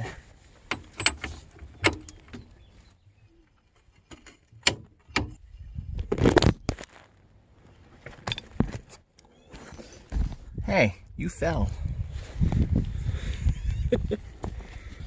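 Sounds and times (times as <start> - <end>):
hand tools clicking on metal: 0.7 - 2.4.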